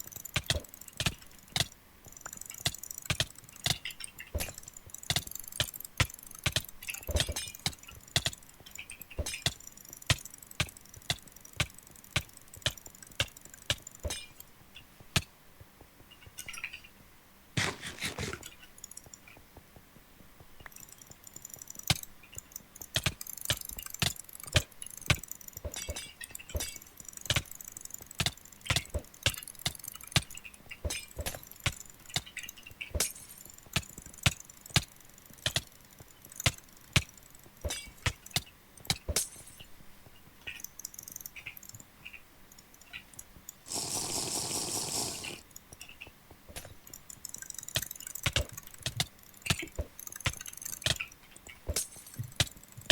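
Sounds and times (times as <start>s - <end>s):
rustling: 17.6s - 18.7s.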